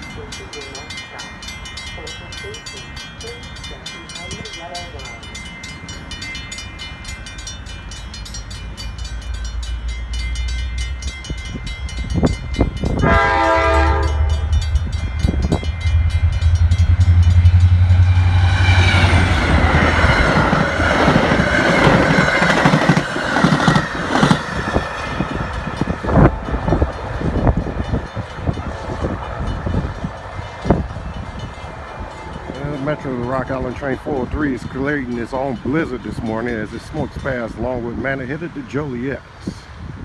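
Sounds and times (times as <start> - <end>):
diesel locomotive engine drone: 0.0 - 40.0
wheels clattering over rail joints: 3.6 - 38.8
train horn blast: 12.8 - 22.0, 25.8 - 34.4.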